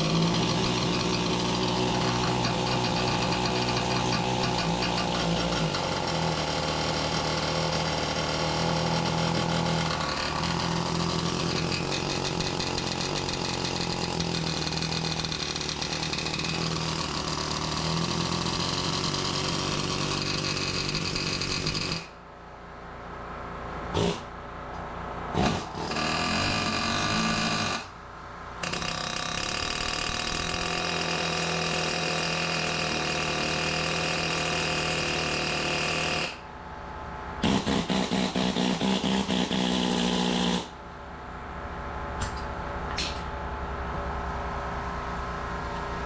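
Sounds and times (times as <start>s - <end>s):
power tool motor whirring: 0.0s - 22.0s, 37.4s - 40.7s.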